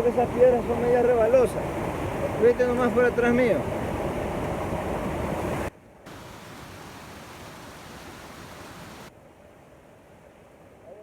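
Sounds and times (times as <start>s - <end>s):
waterfall rushing: 6.1s - 9.1s.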